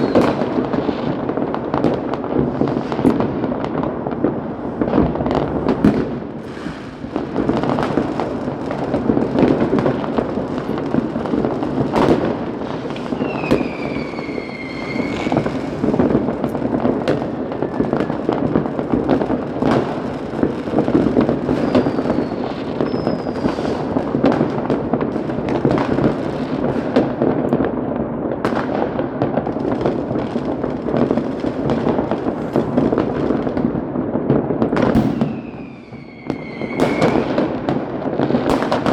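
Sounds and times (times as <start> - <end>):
short firework whistles: 0.0 - 0.6, 6.4 - 7.1, 12.9 - 16.0, 21.5 - 23.9, 31.4 - 33.3, 34.8 - 37.4
firework falling whistle: 0.0 - 1.2, 12.0 - 16.5, 21.5 - 23.9, 31.2 - 33.7, 34.7 - 37.7
fireworks bangs and crackles: 0.0 - 38.9.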